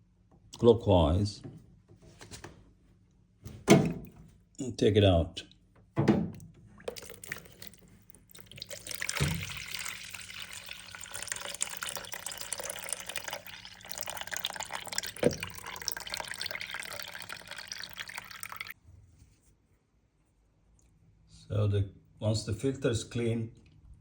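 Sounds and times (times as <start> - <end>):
tap water running: 6.3 - 18.8.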